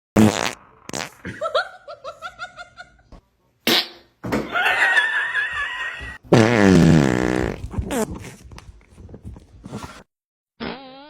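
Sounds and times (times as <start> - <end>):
fart: 0.2 - 1.2, 6.3 - 8.4, 10.6 - 11.0.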